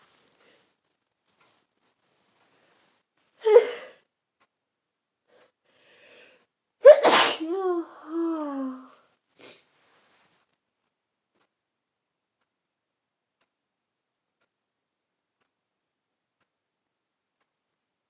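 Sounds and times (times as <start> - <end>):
woman sneezing: 6.8 - 8.0
sniff: 6.9 - 7.4, 9.4 - 9.7
woman groaning: 7.4 - 9.0.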